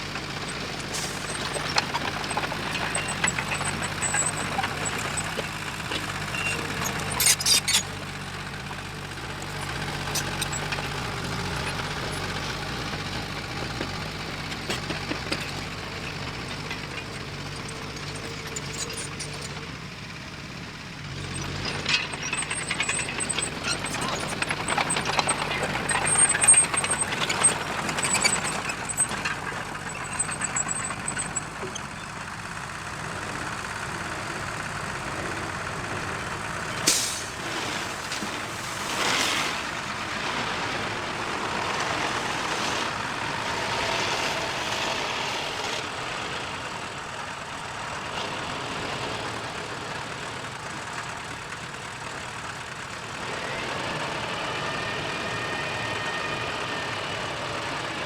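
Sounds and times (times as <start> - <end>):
rattling and clanking: 0.0 - 40.1
heavy machinery running: 0.0 - 45.7.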